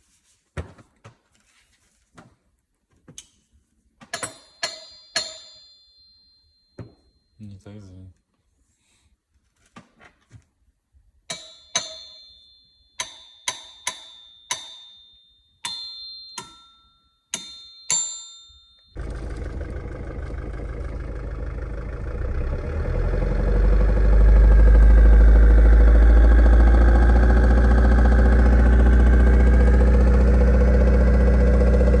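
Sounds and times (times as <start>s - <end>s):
light strikes on metal ringing: 11.3s - 18.4s
engine running: 19.0s - 32.0s.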